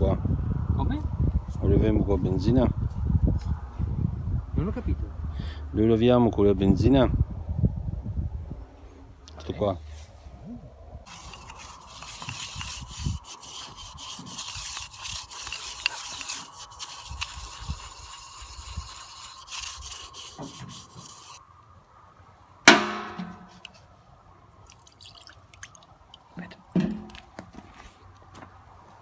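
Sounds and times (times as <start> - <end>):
brush scrubbing a car part: 11.1 - 21.4
sharp knock with a ring: 22.7 - 23.6.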